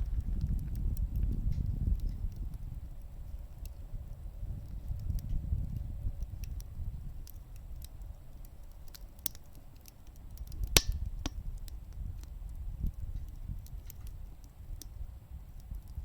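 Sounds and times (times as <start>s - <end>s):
low rumble: 0.0s - 7.2s
wood fire crackling and popping: 0.0s - 16.0s.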